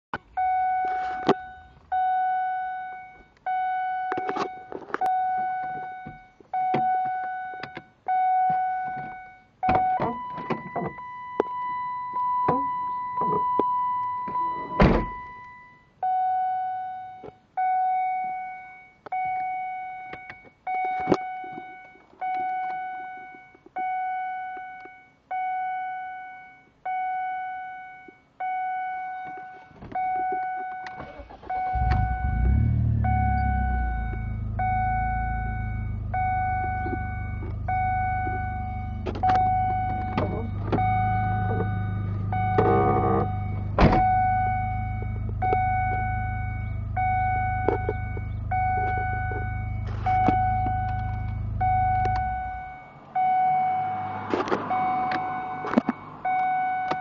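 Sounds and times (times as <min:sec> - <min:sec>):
electronic warning beeps: 0:00.4 - 0:57.0
steady higher warning tone: 0:27.4 - 0:57.0.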